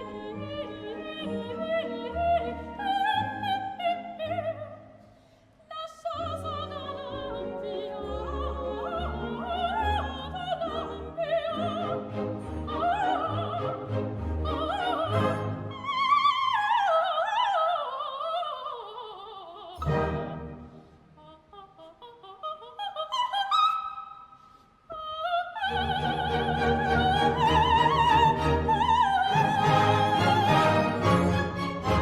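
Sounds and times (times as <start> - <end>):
soprano singing opera: 0.0 - 5.0, 5.7 - 24.3, 24.9 - 32.0
orchestra playing: 19.8 - 20.9, 25.8 - 32.0.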